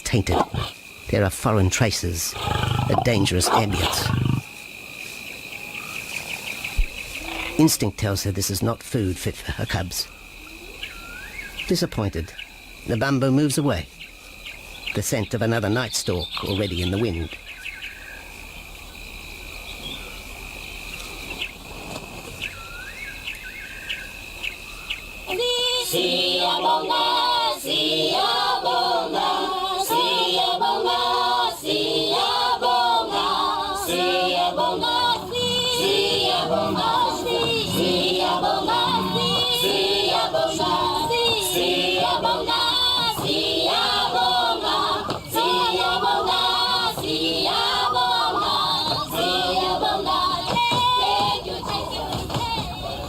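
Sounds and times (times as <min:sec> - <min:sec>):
bird chirps: 0:13.6 - 0:18.6
choir vocal music: 0:25.3 - 0:53.0.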